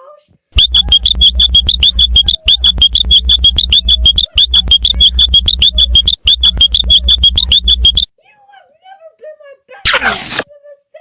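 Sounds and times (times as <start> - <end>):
distorted electronic chirps: 0.6 - 8.1, 9.9 - 10.4.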